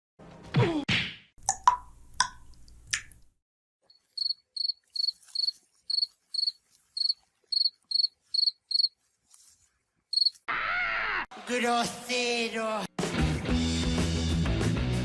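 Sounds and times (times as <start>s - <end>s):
cricket chirping: 3.9s - 9.0s, 10.1s - 10.4s.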